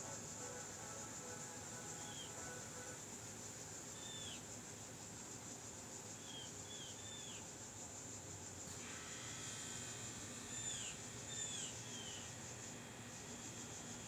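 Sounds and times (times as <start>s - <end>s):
steady high hiss: 0.0s - 4.2s.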